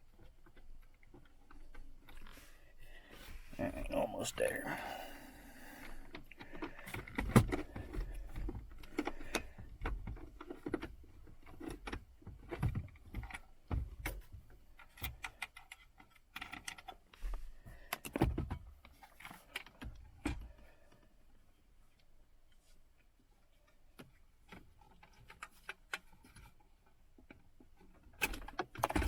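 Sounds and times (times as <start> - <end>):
plastic and metal parts clicking: 5.8 - 17.2, 27.2 - 29.0.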